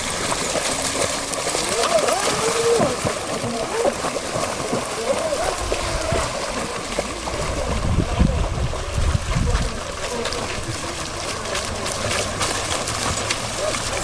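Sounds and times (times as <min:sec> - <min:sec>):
low rumbling: 0:00.0 - 0:14.0
water splashing and trickling: 0:00.0 - 0:14.0.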